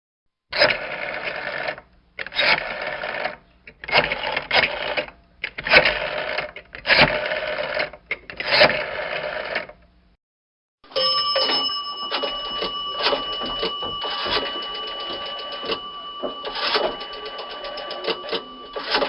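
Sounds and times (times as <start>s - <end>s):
telephone bell ringing: 10.9s - 19.0s.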